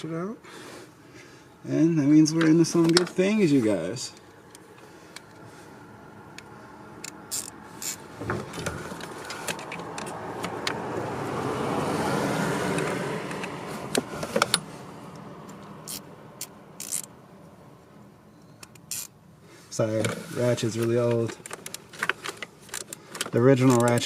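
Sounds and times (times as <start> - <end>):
hand ratchet clicking: 7.0 - 8.0, 15.8 - 17.1, 18.6 - 19.1.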